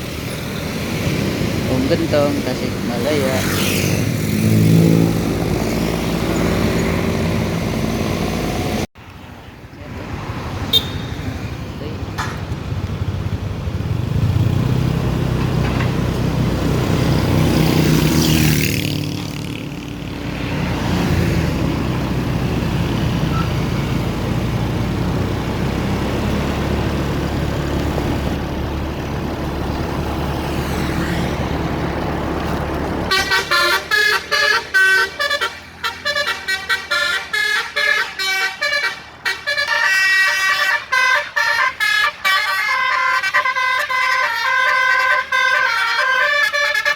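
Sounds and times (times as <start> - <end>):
bus engine running: 4.0 - 8.9, 19.1 - 39.8
multi-tone horn melody: 33.1 - 46.9.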